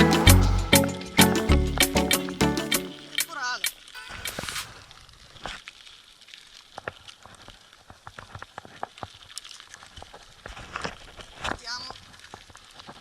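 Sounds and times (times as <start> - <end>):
faint hiss of rain: 2.9 - 13.0
raindrops tapping on a surface: 6.3 - 13.0.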